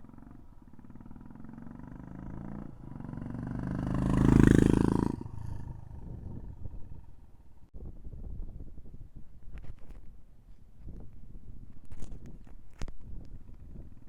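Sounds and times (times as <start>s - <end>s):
motorcycle engine idling and revving: 0.0s - 7.7s.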